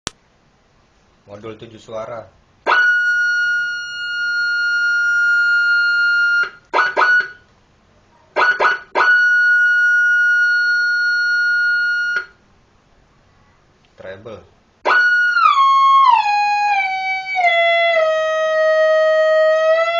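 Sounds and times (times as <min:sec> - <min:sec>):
high-pitched siren tone: 0:02.7 - 0:07.4, 0:08.4 - 0:12.4, 0:14.8 - 0:19.9.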